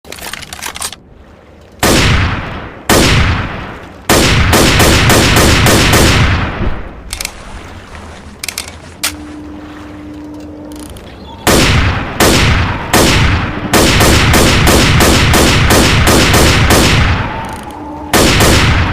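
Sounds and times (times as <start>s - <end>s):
rifle shots echoing: 1.8s - 6.8s, 11.5s - 17.4s, 18.1s - 18.9s.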